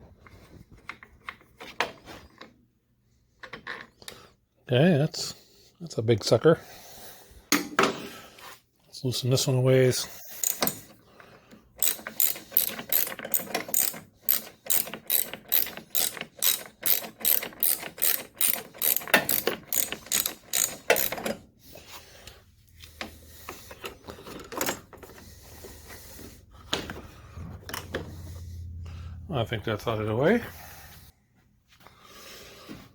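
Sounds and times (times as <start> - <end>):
ratchet wrench clicking: 10.4 - 10.9, 11.8 - 21.4.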